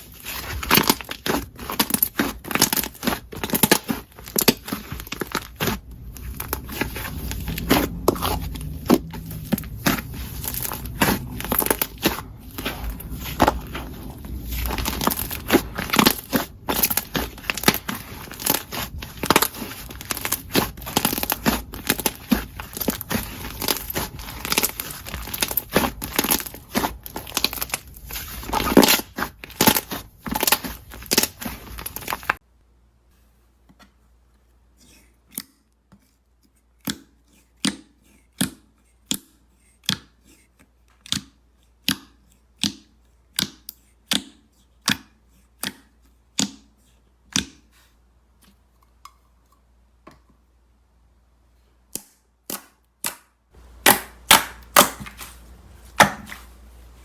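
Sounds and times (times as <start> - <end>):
crunchy slime crackling: 0.0 - 32.4.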